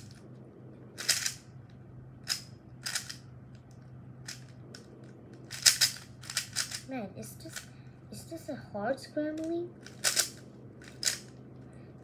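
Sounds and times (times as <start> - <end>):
puzzle cube clacking: 1.0 - 1.4, 2.2 - 7.7, 9.4 - 11.5.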